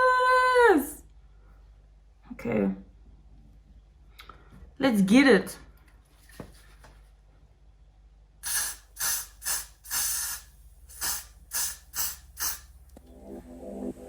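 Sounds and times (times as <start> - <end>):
spray bottle squirts: 8.4 - 12.8.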